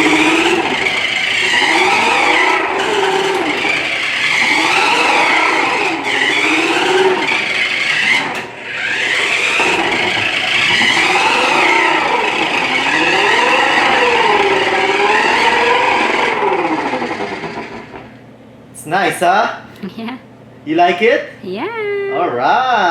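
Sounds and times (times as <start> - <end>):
motor whine rising and falling: 0.0 - 18.2.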